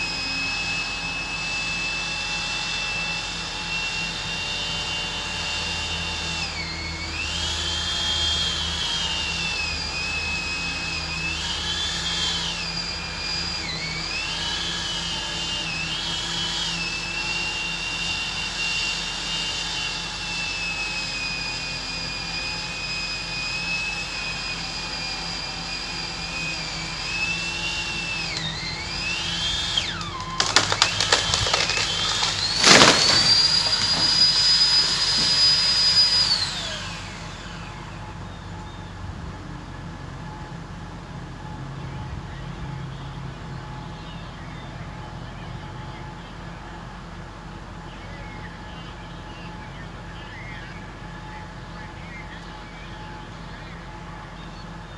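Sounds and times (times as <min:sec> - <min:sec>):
pole chainsaw cutting branches: 0:00.0 - 0:38.2.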